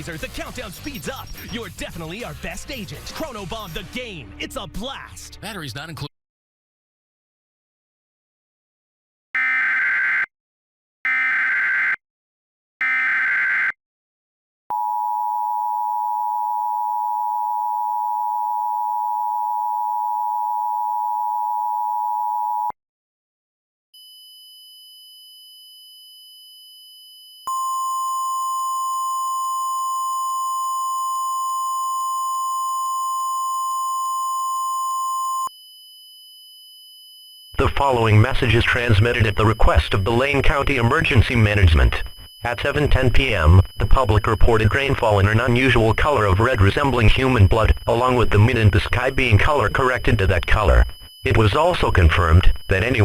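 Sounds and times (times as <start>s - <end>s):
loud steady tone: 27.5s - 35.5s, 37.5s - 53.0s
two-tone attention signal: 27.5s - 35.5s
buzzy data bursts: 37.6s - 53.0s.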